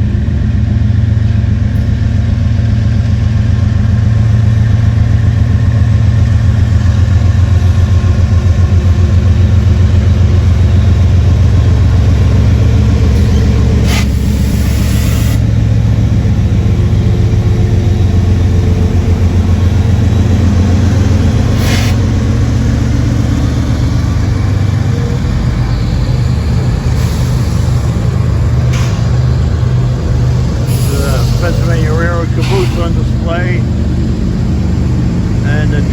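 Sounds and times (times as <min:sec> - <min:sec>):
diesel locomotive engine throb: 0:00.0 - 0:35.9
brief hisses: 0:32.4 - 0:33.0.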